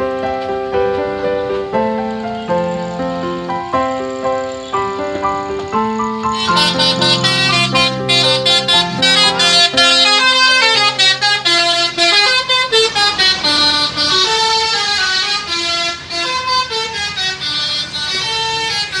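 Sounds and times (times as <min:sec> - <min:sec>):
bus horn playing melody: 0:00.8 - 0:19.0.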